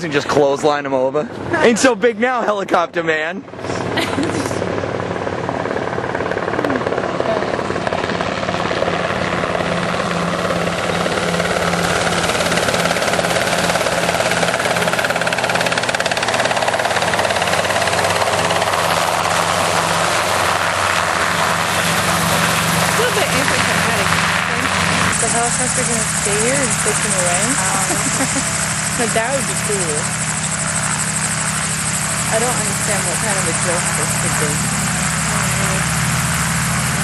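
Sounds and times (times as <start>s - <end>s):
helicopter rotor beat: 0.0s - 37.0s.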